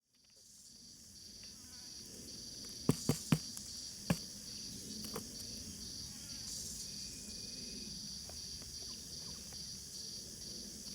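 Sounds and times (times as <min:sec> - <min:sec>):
crickets chirping: 0:00.0 - 0:10.9.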